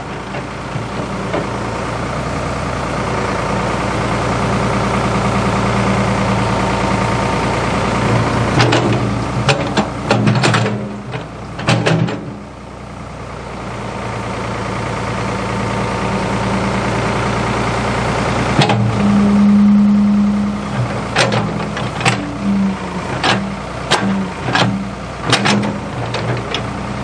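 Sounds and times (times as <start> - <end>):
backhoe diesel engine running: 0.0 - 27.0
sharp knocks and clanks: 8.5 - 12.4, 20.8 - 22.3, 23.1 - 26.6.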